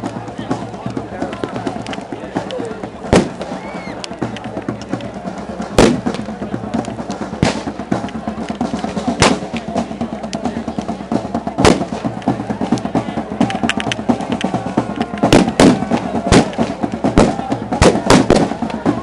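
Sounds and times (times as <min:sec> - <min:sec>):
drums beating fast rhythm: 0:00.0 - 0:19.0
loud sharp bangs: 0:03.1 - 0:03.6, 0:05.7 - 0:06.3, 0:07.4 - 0:07.8, 0:09.1 - 0:09.6, 0:11.6 - 0:12.0, 0:15.3 - 0:18.6.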